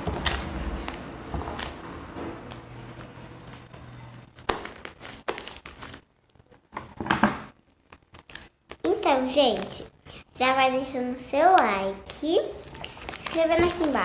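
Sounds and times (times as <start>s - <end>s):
slime squished by hand: 12.5s - 14.0s.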